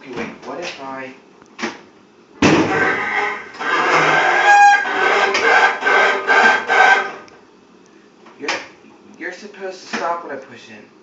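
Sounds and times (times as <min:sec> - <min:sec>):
washing machine squealing: 0:02.7 - 0:07.3.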